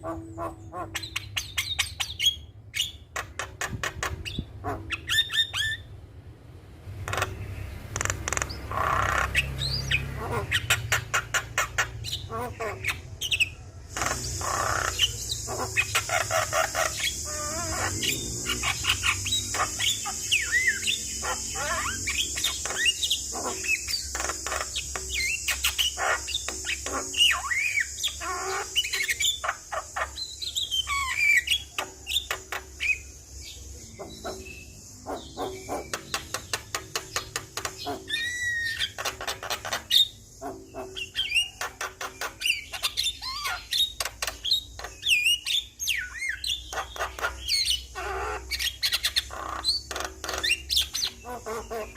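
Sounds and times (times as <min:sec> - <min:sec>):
bird singing: 0:00.0 - 0:06.0, 0:07.0 - 0:51.9
steady high-pitched hiss: 0:13.8 - 0:45.9.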